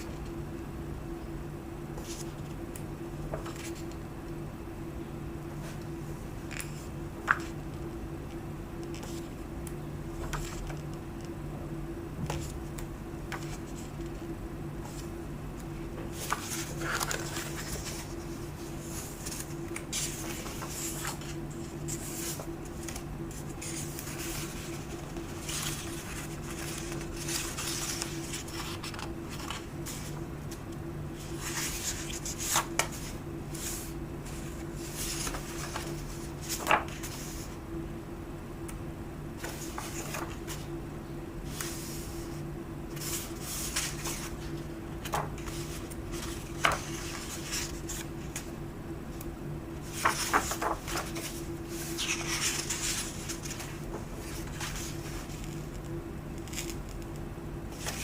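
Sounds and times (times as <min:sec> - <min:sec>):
book pages turning: 0:03.3 - 0:04.0, 0:06.4 - 0:07.8, 0:10.2 - 0:11.3, 0:12.2 - 0:14.2, 0:14.8 - 0:37.6, 0:39.4 - 0:40.7, 0:41.5 - 0:48.5, 0:49.8 - 0:57.1, 0:57.7 - 0:58.0.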